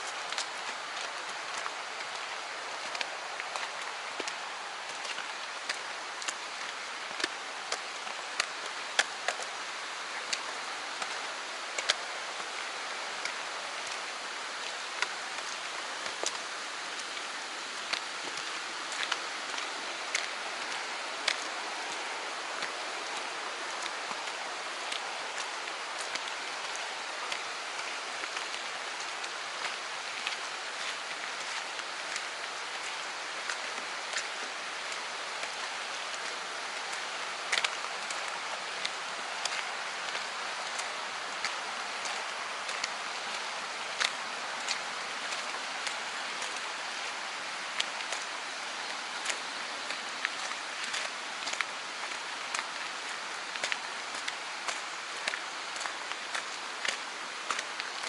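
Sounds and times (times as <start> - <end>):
running water rushing: 0.0 - 58.0.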